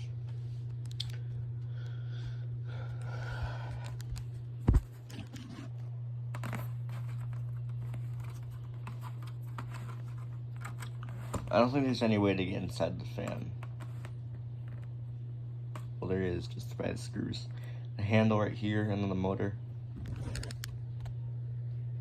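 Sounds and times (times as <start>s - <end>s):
steady low hum: 0.0s - 22.0s
handling scratching and tapping: 4.7s - 11.8s, 13.1s - 15.0s.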